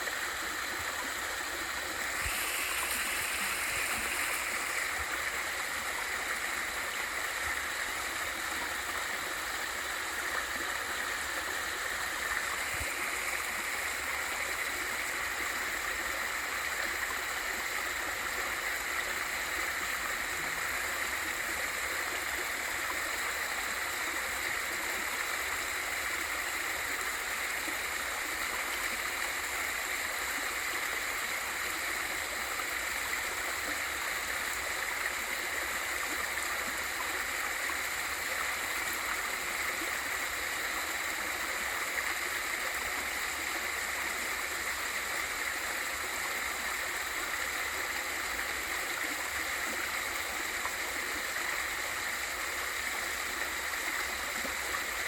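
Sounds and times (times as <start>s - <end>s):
waterfall rushing into stream: 0.0s - 21.8s.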